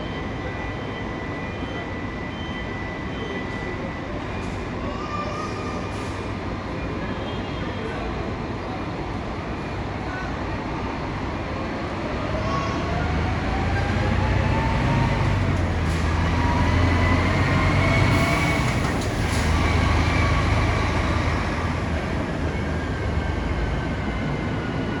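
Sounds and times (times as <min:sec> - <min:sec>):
bus diesel engine rumbling: 0:11.9 - 0:24.8
engine whine climbing in pitch: 0:12.0 - 0:25.0.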